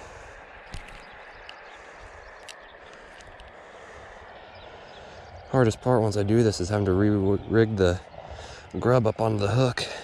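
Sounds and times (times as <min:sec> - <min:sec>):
light clicks of handled gear: 0:00.7 - 0:01.7, 0:02.4 - 0:03.6.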